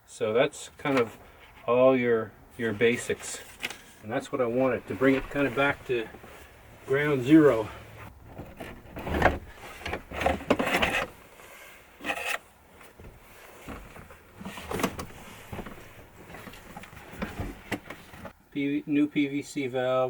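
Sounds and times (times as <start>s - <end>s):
objects knocking and rubbing: 3.4s - 7.0s, 7.8s - 11.2s, 12.0s - 18.3s.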